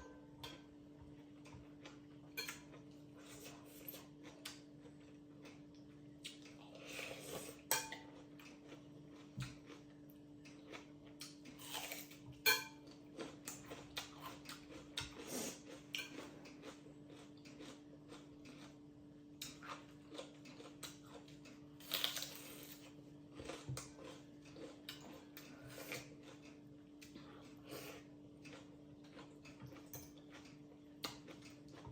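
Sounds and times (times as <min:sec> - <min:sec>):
utensils clinking against a bowl: 0:02.4 - 0:04.0, 0:11.6 - 0:15.2, 0:29.6 - 0:30.5.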